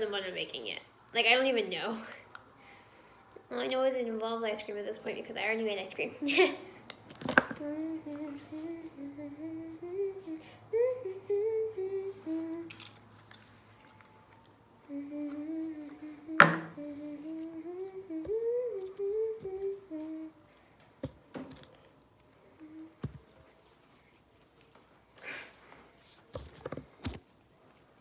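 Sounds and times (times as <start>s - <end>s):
person humming: 6.2s - 12.9s, 14.8s - 20.6s, 22.4s - 23.3s
sharp tap: 16.4s - 16.8s.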